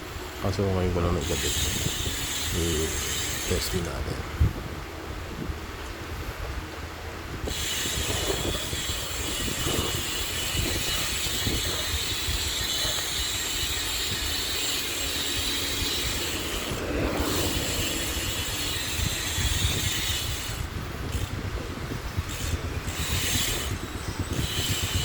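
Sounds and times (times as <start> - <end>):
bike hub freewheeling whir: 0.0 - 4.0, 7.2 - 25.0.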